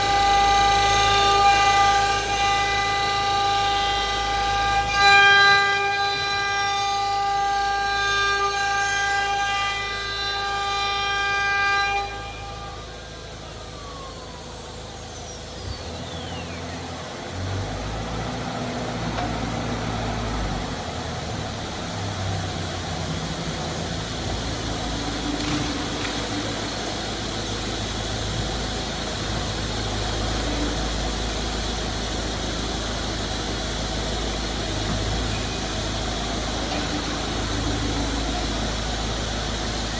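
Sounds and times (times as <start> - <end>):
low machine hum: 0.0 - 39.9
router spindle whine: 0.0 - 39.9.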